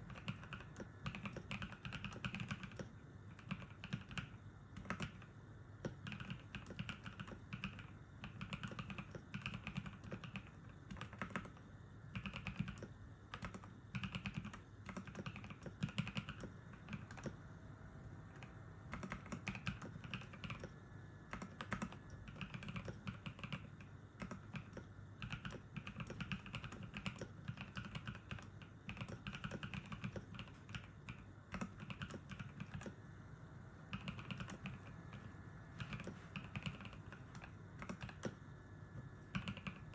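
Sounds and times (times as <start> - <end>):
mechanical keyboard typing: 0.0 - 17.4, 18.3 - 33.0, 33.9 - 38.4, 39.0 - 39.9.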